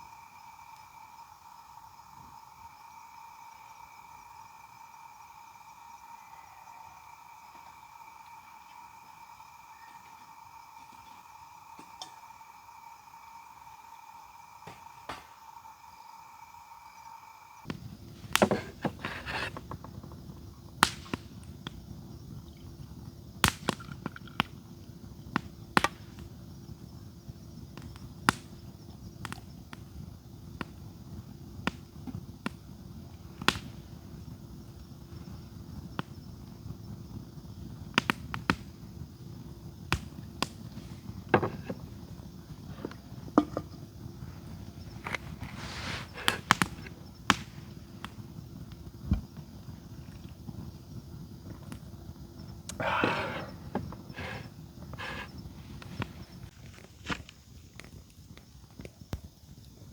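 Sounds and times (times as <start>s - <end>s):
campfire crackling and popping: 14.6s - 15.6s, 17.6s - 59.9s.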